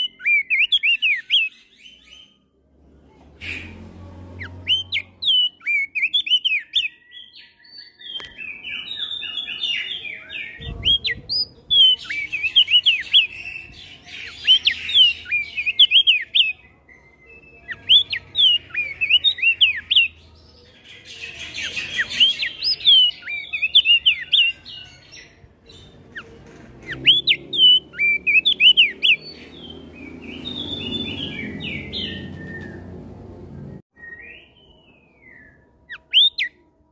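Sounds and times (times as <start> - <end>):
other birds calling: 3.3 - 33.8
bird fast high chirping: 4.4 - 7.0, 10.5 - 16.6, 25.8 - 33.0.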